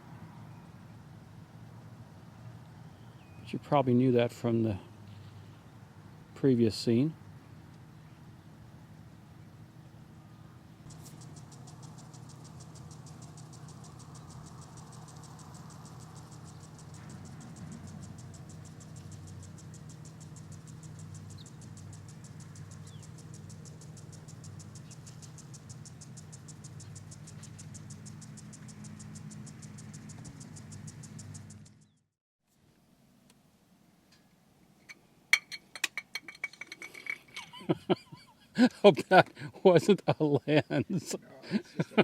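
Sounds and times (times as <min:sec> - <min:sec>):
steady low hum: 0:00.0 - 0:42.0
insect chirping: 0:10.9 - 0:32.0.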